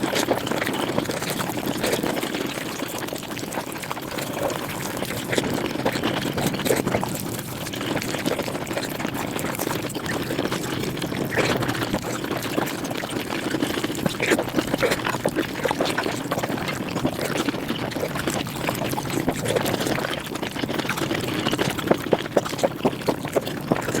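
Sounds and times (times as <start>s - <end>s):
sped-up chewing and smacking: 0.0s - 24.0s.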